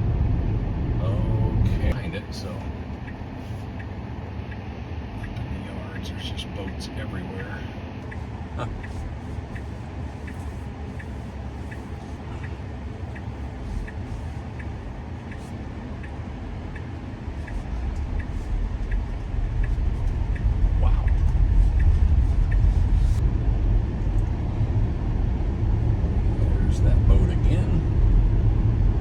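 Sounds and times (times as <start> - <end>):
car road and engine rumble: 0.0 - 29.0
faint regular ticking: 6.6 - 23.2.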